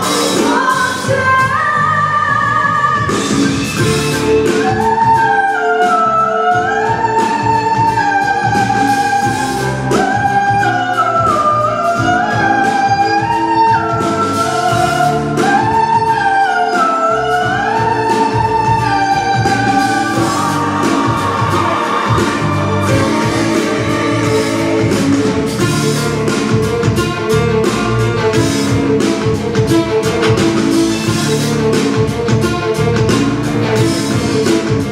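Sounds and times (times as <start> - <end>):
woman singing: 0.0 - 3.4, 4.3 - 26.2
instrumental accompaniment: 0.0 - 34.9.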